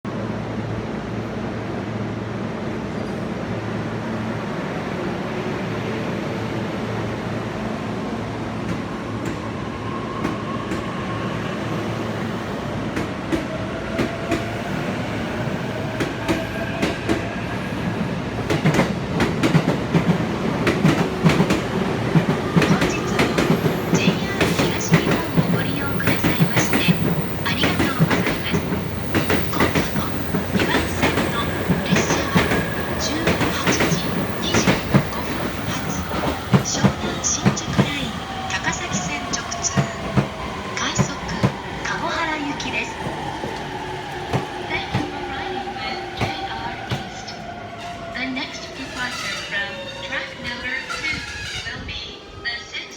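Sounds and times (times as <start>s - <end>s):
train wheels clacking on rails: 18.4s - 45.3s, 46.1s - 47.4s.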